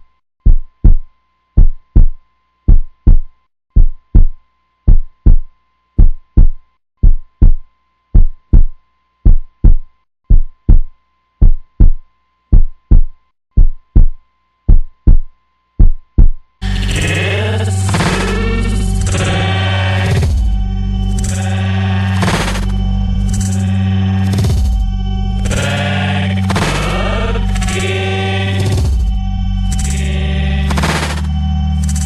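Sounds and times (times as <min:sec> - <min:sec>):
heartbeat double thumps: 0:00.4 - 0:16.4, 0:17.9 - 0:21.5, 0:28.6 - 0:30.0.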